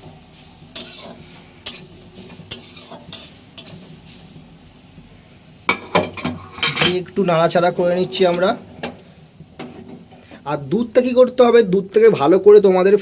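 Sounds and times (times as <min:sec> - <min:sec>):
utensil scraping across a pan: 0:00.0 - 0:04.6, 0:05.7 - 0:10.5
light sizzle: 0:00.0 - 0:13.0.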